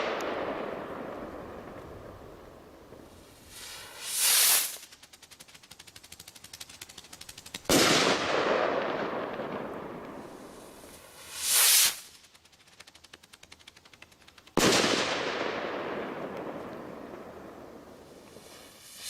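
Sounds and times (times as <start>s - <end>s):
rocket whooshing up: 0.0s - 5.0s, 9.3s - 12.2s
crackling pops: 0.0s - 19.0s.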